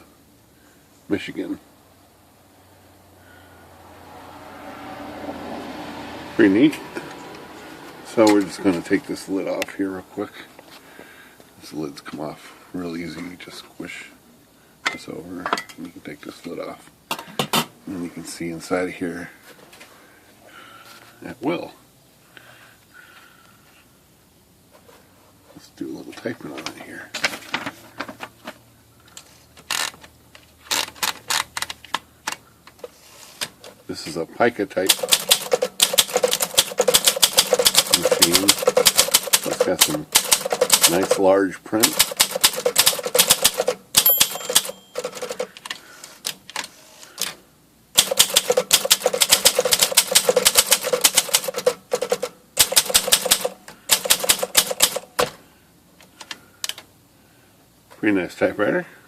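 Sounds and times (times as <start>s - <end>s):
manual typewriter keystrokes: 30.7s - 32.4s, 34.8s - 41.2s, 41.8s - 47.4s, 48.0s - 55.4s.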